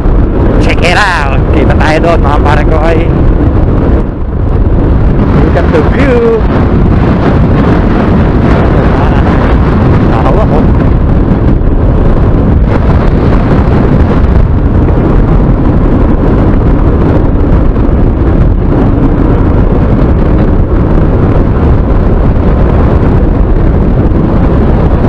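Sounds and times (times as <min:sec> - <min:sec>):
road noise: 0:00.0 - 0:25.0
wind buffeting microphone: 0:00.0 - 0:25.0.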